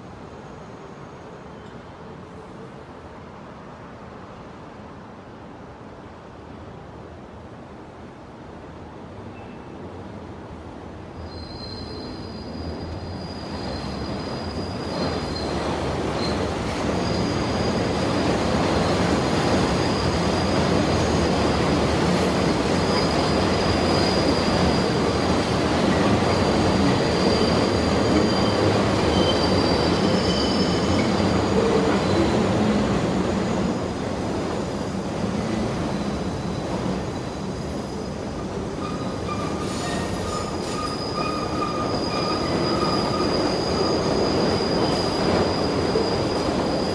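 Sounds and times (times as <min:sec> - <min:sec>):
high-pitched wheel squeal: 0:11.3 - 0:19.1, 0:22.6 - 0:32.8, 0:38.8 - 0:46.9
train wheels rumbling on rail: 0:11.3 - 0:46.9.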